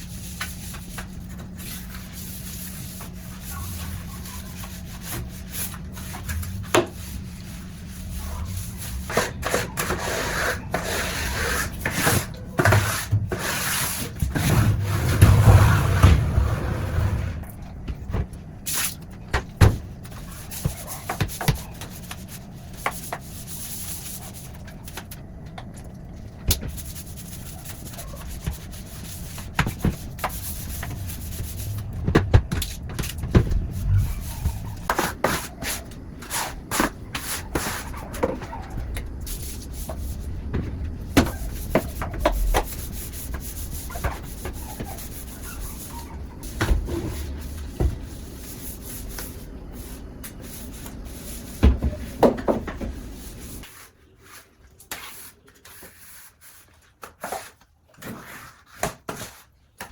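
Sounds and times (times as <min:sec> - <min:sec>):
floor scrubbing strokes: 0:00.0 - 0:17.5, 0:26.7 - 0:40.5, 0:52.9 - 0:59.5
knocks and clatters: 0:29.4 - 0:35.3.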